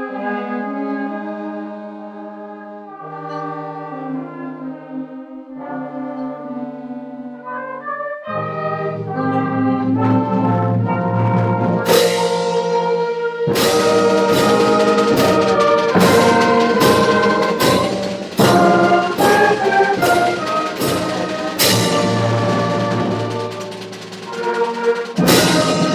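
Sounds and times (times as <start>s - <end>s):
held brass chords: 0.1s - 25.9s
percussion strikes: 11.8s - 25.9s.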